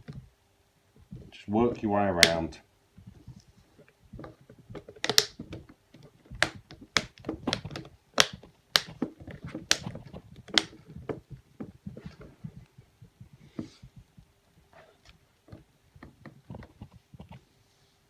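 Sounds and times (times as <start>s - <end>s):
handling noise: 3.0s - 17.4s
plastic tabs snapping clicks: 5.0s - 5.4s.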